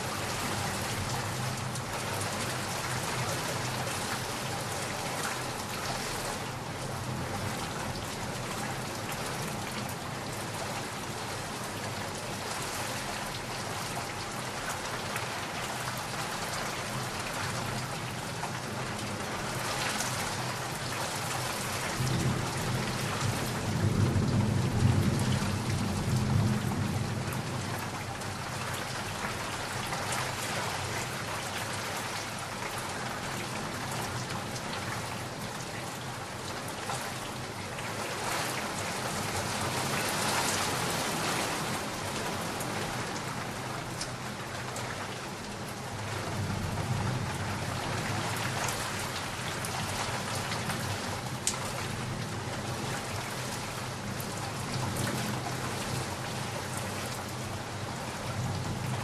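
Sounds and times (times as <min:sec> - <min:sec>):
heavy rain falling: 0:00.0 - 0:59.0
low rumble of thunder: 0:21.7 - 0:29.5, 0:46.0 - 0:56.4.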